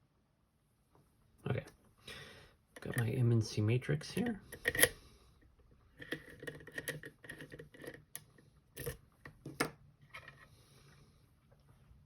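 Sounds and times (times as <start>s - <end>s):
lock-picking tools clicking: 4.5s - 5.0s, 6.0s - 9.0s.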